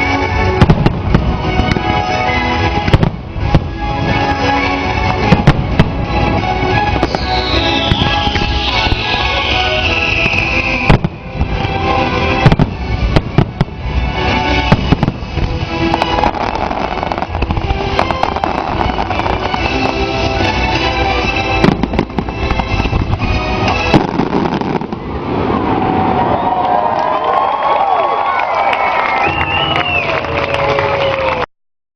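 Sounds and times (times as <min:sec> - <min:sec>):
fireworks exploding: 0:00.5 - 0:26.6
show music through outdoor speakers: 0:12.4 - 0:24.9.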